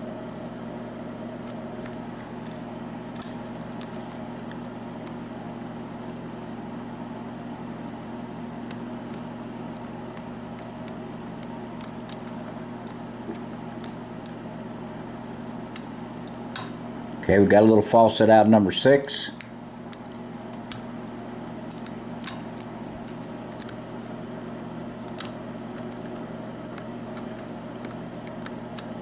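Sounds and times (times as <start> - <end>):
steady electrical hum: 0.0 - 29.0.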